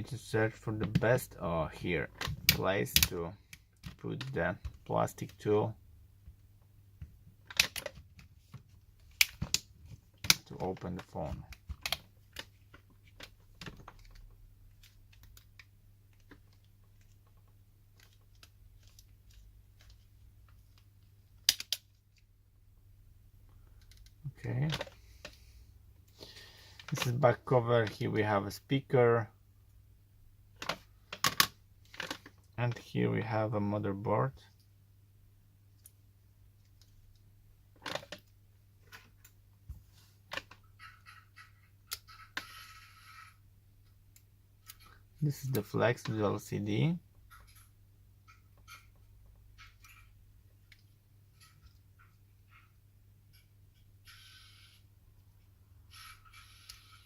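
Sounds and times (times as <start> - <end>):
plastic parts clicking: 7.4 - 8.2, 21.4 - 22.2, 23.7 - 25.4, 30.6 - 32.4, 37.8 - 38.3, 40.3 - 40.9
plastic clips snapping: 21.4 - 21.9.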